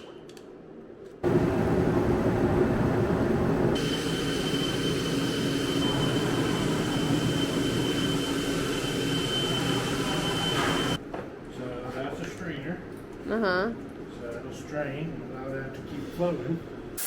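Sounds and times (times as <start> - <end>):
thin high whine: 3.7 - 11.0
machine motor running loudly: 3.8 - 11.0.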